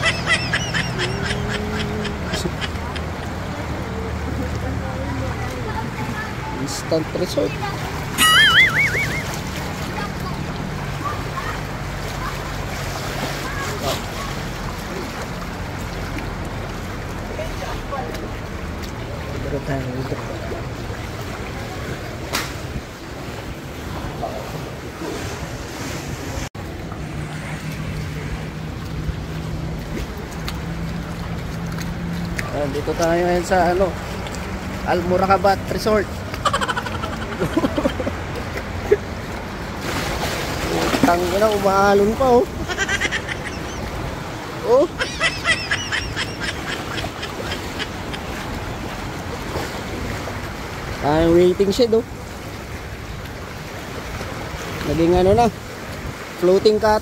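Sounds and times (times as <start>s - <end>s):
choppy water waves: 0.0s - 57.0s
short repeated calls: 8.2s - 9.4s.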